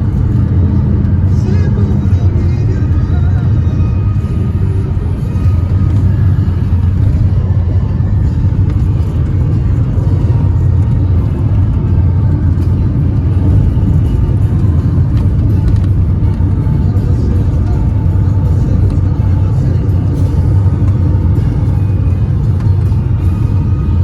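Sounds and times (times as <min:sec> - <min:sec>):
car engine and tyres rumbling: 0:00.0 - 0:24.0.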